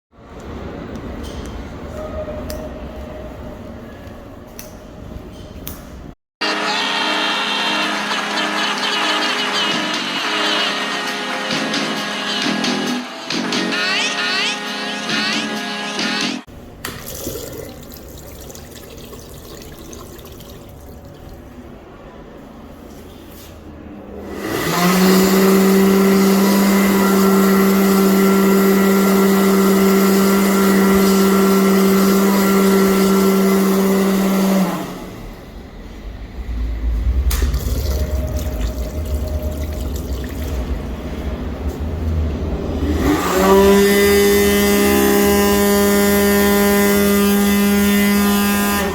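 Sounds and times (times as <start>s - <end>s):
hand dryer humming and whining: 24.2s - 48.9s
deep low rumble: 35.6s - 42.9s.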